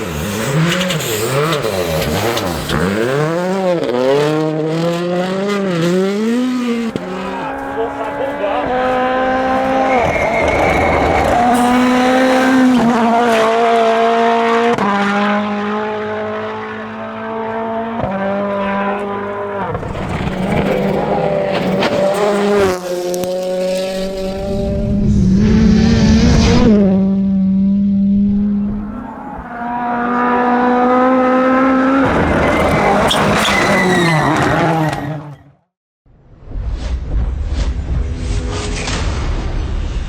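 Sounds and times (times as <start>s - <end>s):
rally car engines at high revs: 0.0s - 35.6s
tyre noise and scrabbling: 18.8s - 24.7s.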